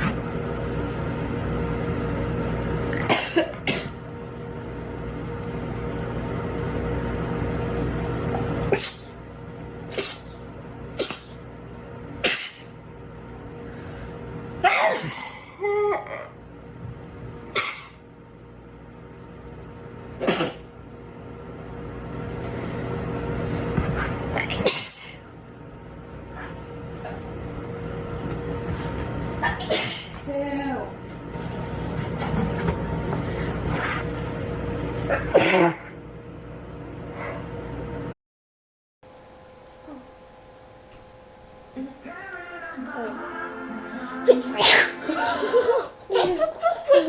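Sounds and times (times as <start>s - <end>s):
person sneezing: 8.6s - 9.2s, 9.9s - 10.4s, 11.0s - 11.4s, 12.2s - 12.7s, 14.6s - 15.5s, 17.5s - 18.0s, 20.2s - 20.7s, 23.8s - 25.2s, 29.4s - 30.2s, 35.0s - 35.9s, 44.6s - 45.0s.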